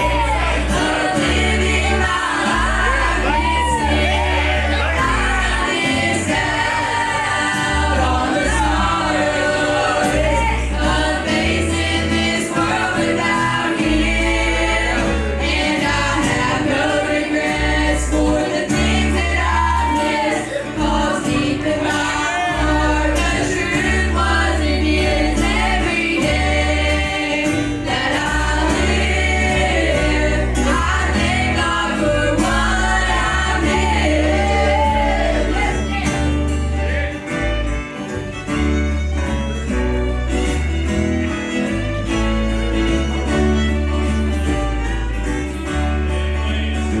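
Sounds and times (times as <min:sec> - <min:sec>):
voices singing together: 0:00.0 - 0:37.4
band playing: 0:00.0 - 0:47.0
bass line: 0:00.0 - 0:47.0.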